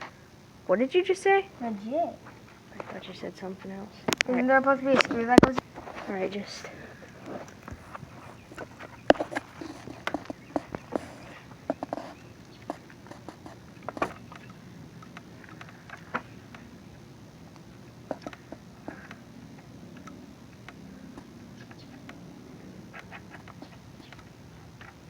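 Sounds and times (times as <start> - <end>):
faint steady hum: 0.0 - 25.0.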